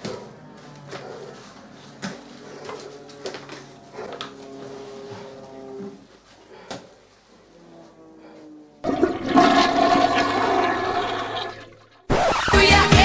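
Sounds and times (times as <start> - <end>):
faint music: 0.0 - 8.9
loud pop music: 12.1 - 13.0.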